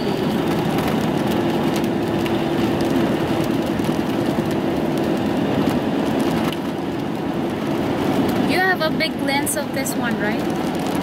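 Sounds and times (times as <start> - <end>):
road noise inside moving car: 0.0 - 11.0.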